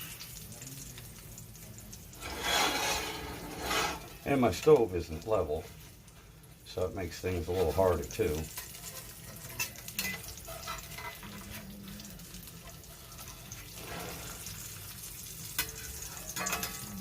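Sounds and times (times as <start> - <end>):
egg sizzling in a skillet: 0.0 - 17.0.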